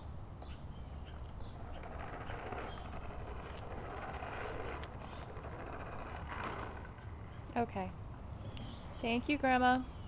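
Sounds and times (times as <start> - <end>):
toy lawnmower rattling: 1.6 - 7.2.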